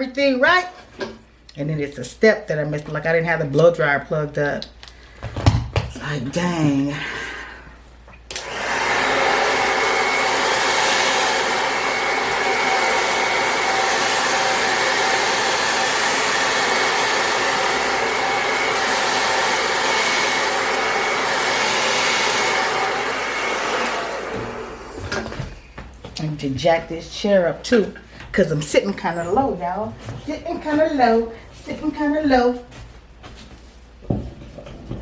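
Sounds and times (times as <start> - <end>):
blow dryer running: 8.3 - 25.6.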